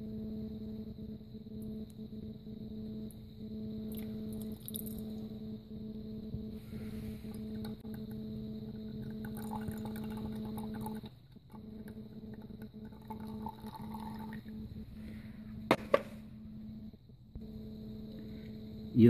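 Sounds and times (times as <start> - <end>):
steady hum: 0.0 - 19.0
liquid being poured and strained: 3.9 - 5.1, 8.7 - 14.7.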